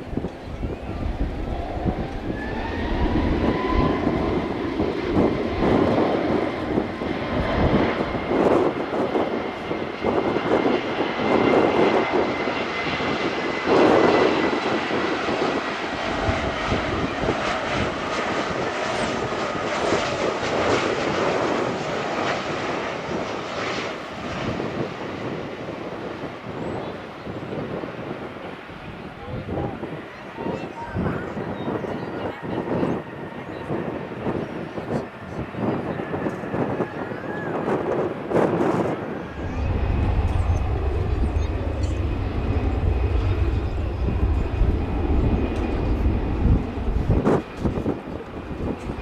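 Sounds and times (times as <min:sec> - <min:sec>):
jet engines passing: 0:00.0 - 0:49.0.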